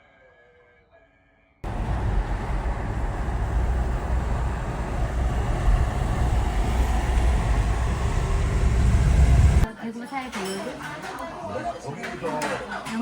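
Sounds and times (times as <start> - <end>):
vehicle rumble: 1.6 - 9.7.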